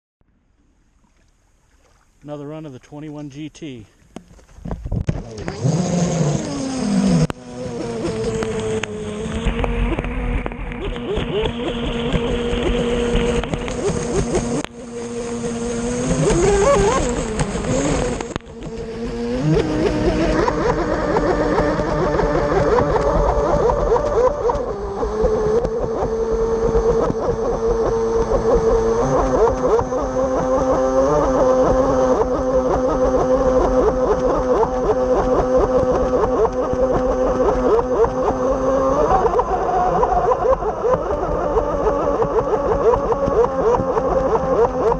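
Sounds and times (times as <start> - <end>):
electric motor whining: 5.0 - 44.9
water rushing: 5.2 - 24.8.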